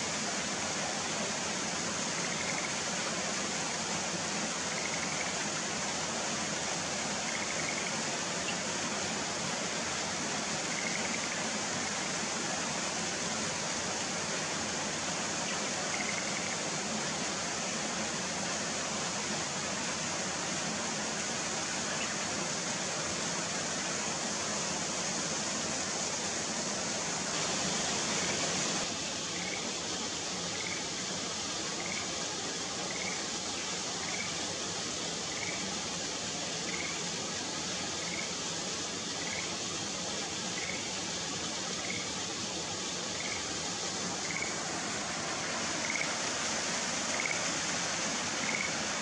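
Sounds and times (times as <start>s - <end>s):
running water rushing: 0.0s - 49.0s
frogs calling: 2.1s - 2.8s, 4.7s - 5.4s, 7.0s - 8.6s, 10.6s - 12.1s, 15.5s - 16.7s, 28.0s - 29.8s, 30.5s - 31.0s, 31.7s - 33.4s, 34.0s - 34.4s, 35.2s - 35.7s, 36.6s - 37.1s, 38.0s - 38.4s, 39.1s - 39.7s, 40.4s - 41.0s, 41.7s - 42.3s, 43.1s - 49.0s.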